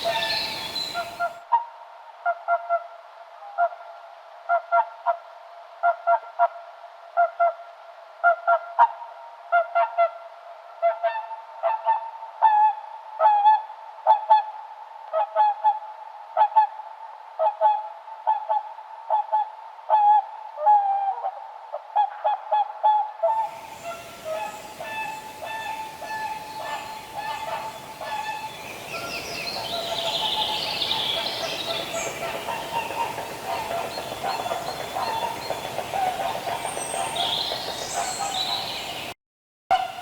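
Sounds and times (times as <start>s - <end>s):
swans honking: 0.0s - 1.3s, 23.4s - 40.0s.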